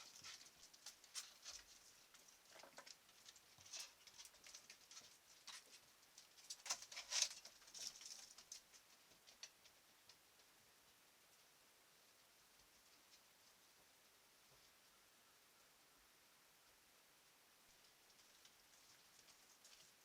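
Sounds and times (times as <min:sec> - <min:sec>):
animal scratching and pattering: 0:00.0 - 0:10.5, 0:17.7 - 0:20.0.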